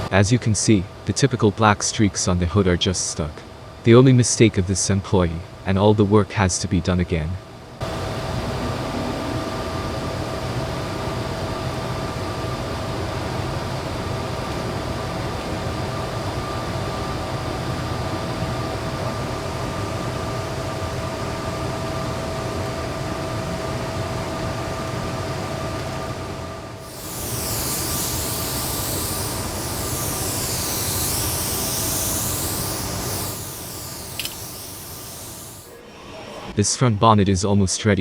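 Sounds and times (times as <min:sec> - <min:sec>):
ventilation and machinery hum: 0:00.0 - 0:38.0
faint high-pitched whine: 0:26.8 - 0:35.8.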